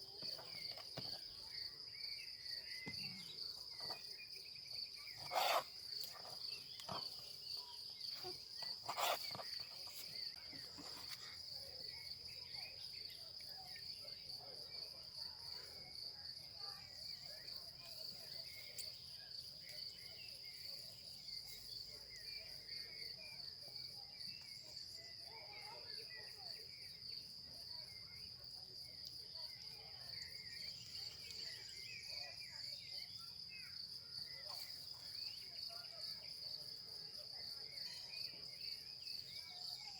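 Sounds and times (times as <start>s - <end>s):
insects chirring: 0.1s - 14.4s.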